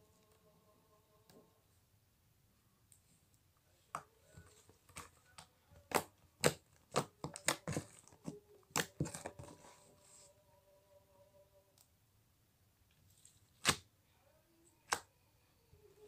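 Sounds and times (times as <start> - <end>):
slime popping and crackling: 5.8 - 9.4, 13.5 - 13.8.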